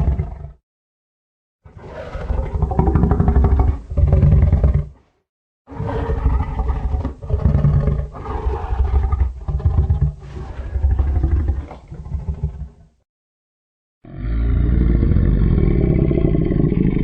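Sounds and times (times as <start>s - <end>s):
giant monster roaring: 14.0s - 17.0s.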